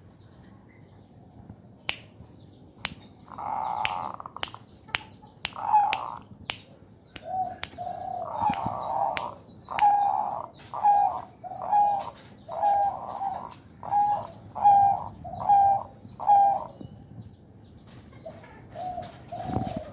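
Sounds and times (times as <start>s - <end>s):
finger clicks: 1.9s - 2.2s, 2.8s - 3.0s, 3.8s - 10.1s
dove cooing: 3.3s - 4.3s, 5.6s - 6.2s, 7.2s - 16.8s, 18.2s - 19.9s.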